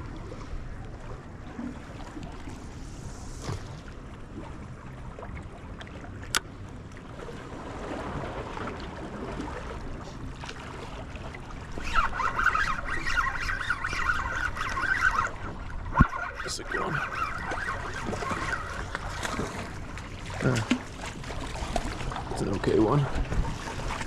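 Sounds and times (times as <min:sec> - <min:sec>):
water at the shore: 0:00.0 - 0:24.0
wind: 0:00.0 - 0:24.0.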